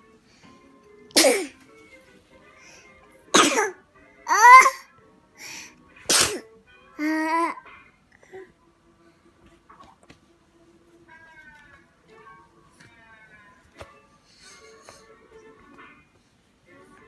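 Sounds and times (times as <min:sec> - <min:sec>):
baby sneezing: 0:01.2 - 0:01.6, 0:03.3 - 0:04.8, 0:05.5 - 0:07.6
baby crying: 0:04.3 - 0:04.8, 0:07.0 - 0:07.6.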